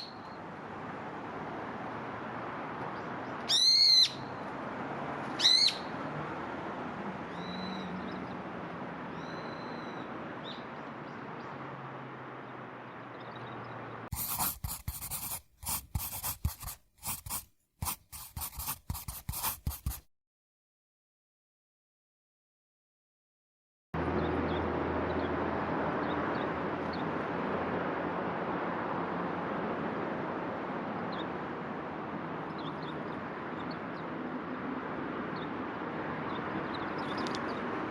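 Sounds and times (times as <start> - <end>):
shrill bird calls: 3.5 - 4.3, 5.4 - 5.8.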